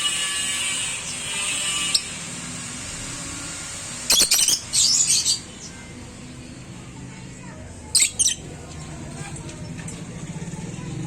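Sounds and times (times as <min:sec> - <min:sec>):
lovebirds chattering: 0:04.1 - 0:06.3, 0:07.8 - 0:09.8
lovebirds squawking harshly: 0:08.0 - 0:08.5.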